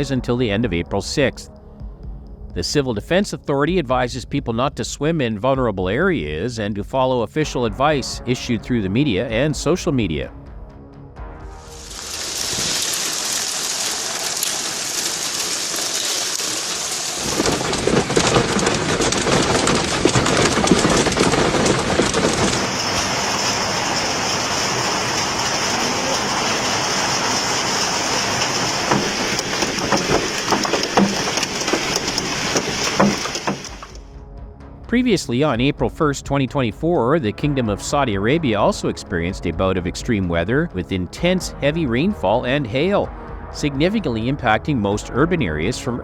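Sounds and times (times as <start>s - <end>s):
heavy rain pouring: 11.4s - 34.0s.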